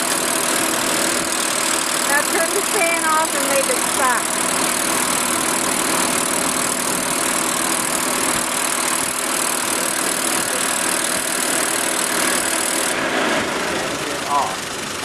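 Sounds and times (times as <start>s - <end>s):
blower fan running: 0.0s - 15.0s
car engine idling: 0.0s - 15.0s.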